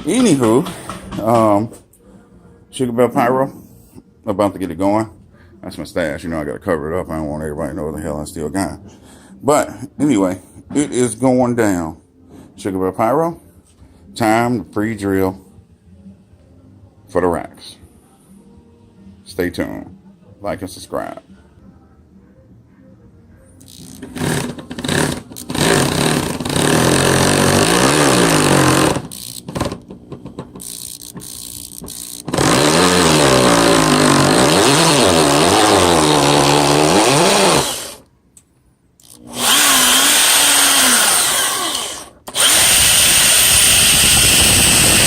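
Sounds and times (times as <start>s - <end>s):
power drill drilling: 23.7s - 29.7s, 30.6s - 38.0s, 39.0s - 45.0s.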